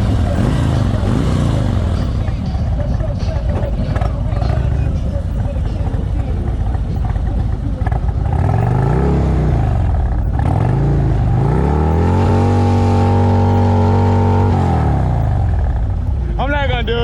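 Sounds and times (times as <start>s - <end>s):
motorcycle engine revving: 0.0s - 17.0s.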